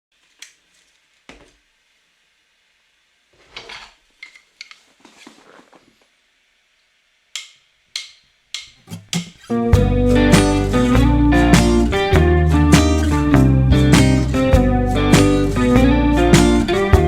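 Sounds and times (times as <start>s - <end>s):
rustling or scraping: 3.3s - 6.2s.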